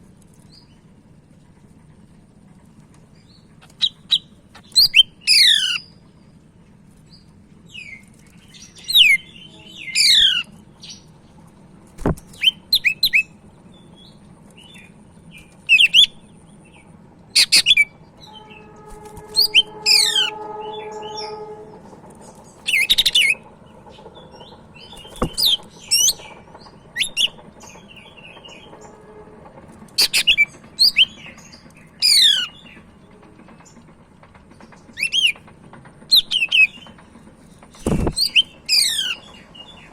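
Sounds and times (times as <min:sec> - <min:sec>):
bird whistling song: 0:03.6 - 0:05.9, 0:08.8 - 0:10.5, 0:12.3 - 0:13.4, 0:15.7 - 0:16.2, 0:17.4 - 0:21.8, 0:22.6 - 0:23.5, 0:24.2 - 0:28.7, 0:30.0 - 0:31.4, 0:32.0 - 0:32.7, 0:38.0 - 0:39.8
steady droning tone: 0:18.2 - 0:22.6.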